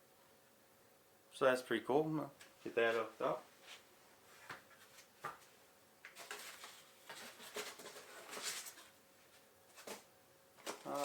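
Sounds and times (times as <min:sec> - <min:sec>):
packaging rustling: 0:06.1 - 0:09.0, 0:09.7 - 0:11.0.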